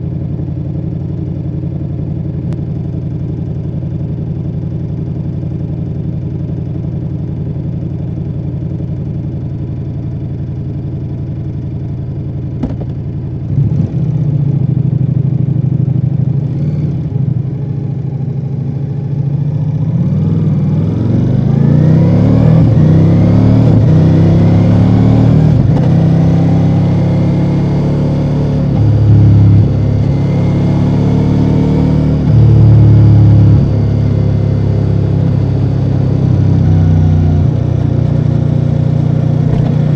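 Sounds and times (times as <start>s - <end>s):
motorcycle engine accelerating: 10.3s - 39.9s.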